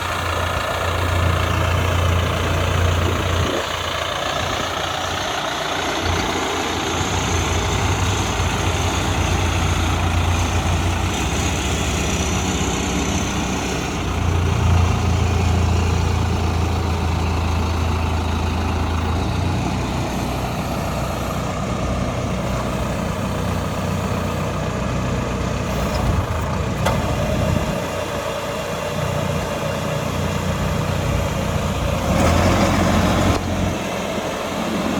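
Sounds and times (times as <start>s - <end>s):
diesel engine humming: 0.0s - 34.9s.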